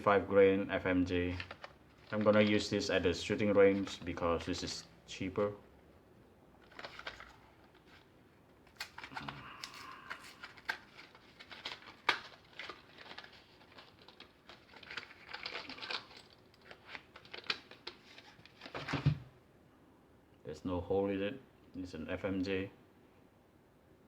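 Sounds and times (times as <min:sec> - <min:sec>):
packaging rustling: 0:01.2 - 0:05.5, 0:06.6 - 0:19.2.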